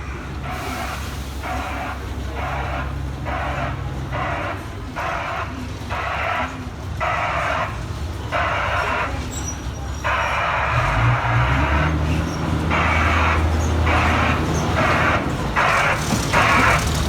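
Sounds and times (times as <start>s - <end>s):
diesel locomotive idling hum: 0.0s - 17.0s.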